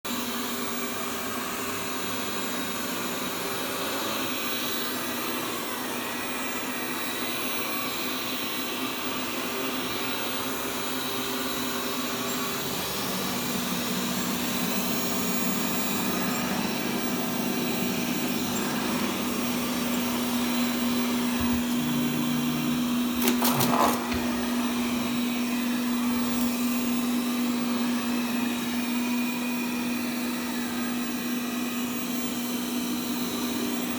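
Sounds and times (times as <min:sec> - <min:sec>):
robot vacuum whirring: 0:07.9 - 0:33.9.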